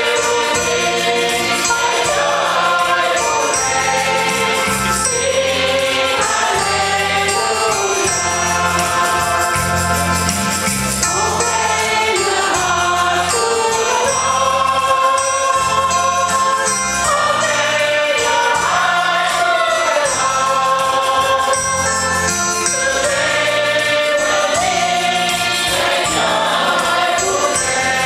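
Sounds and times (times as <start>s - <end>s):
choir singing worship song: 0.0s - 28.0s
fast ticking beat: 0.0s - 28.0s
instrumental backing with bass: 0.0s - 28.0s.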